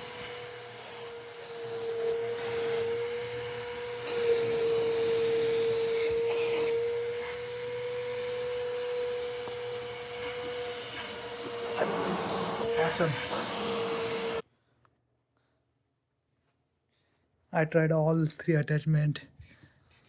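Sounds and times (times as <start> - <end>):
vacuum cleaner running: 0.0 - 14.4.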